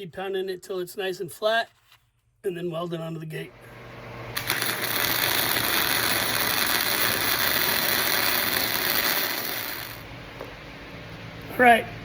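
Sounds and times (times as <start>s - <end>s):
welding arc crackling: 4.3s - 10.1s.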